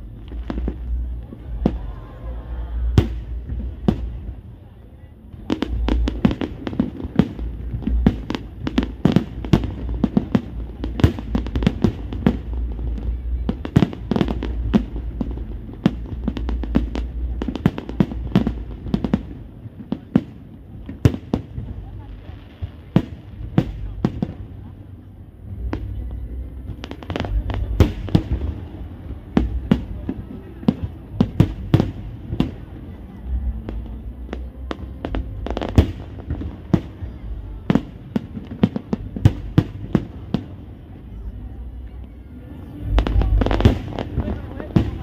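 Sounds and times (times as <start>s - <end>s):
fireworks exploding: 0.0s - 45.0s
deep rumble: 22.8s - 45.0s.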